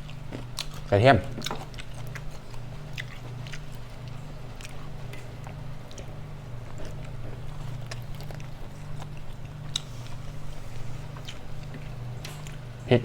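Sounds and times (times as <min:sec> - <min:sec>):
person chewing food: 0:00.0 - 0:12.8
steady low hum: 0:00.0 - 0:13.0.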